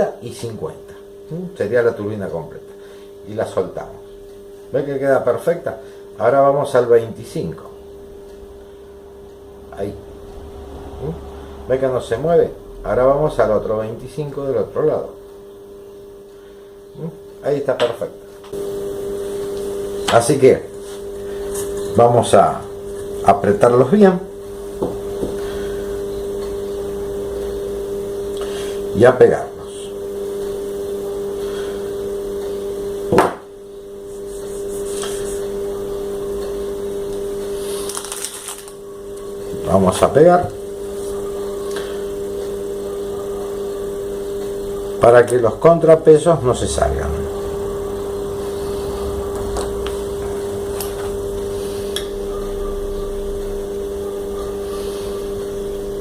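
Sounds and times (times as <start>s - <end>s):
steady hum: 0.0s - 56.0s
sharp knock: 33.1s - 33.5s.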